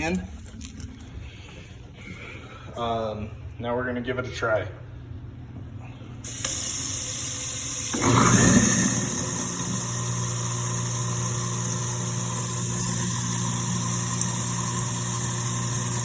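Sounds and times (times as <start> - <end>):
garbage disposal motor humming: 6.2 - 16.0.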